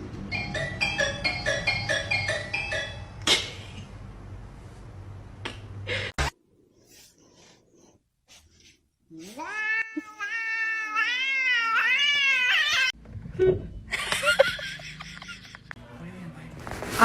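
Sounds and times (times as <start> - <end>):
cat yowling meow: 9.4 - 12.9.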